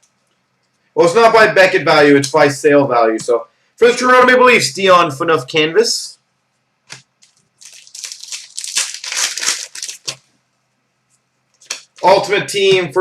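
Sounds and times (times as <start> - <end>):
wrapper crinkling and rustling: 6.9 - 10.3, 11.6 - 12.1
wrapper click: 11.6 - 12.0.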